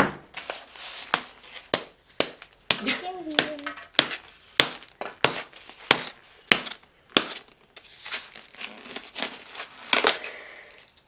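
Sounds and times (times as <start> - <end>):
shell and packaging crinkling: 0.3 - 11.0
sharp knocks on plastic egg: 1.1 - 7.4.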